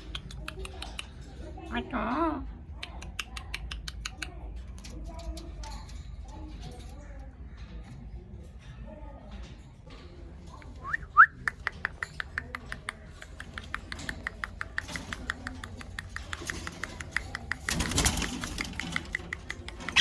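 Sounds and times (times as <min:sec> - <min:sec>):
parakeet chirps and clicking notes: 0:00.0 - 0:01.2, 0:10.6 - 0:20.0.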